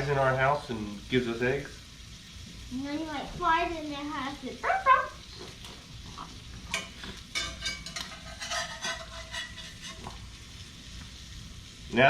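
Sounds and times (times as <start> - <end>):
meat sizzling in frying pan: 0.0 - 12.0
utensil scraping pan: 6.7 - 10.2.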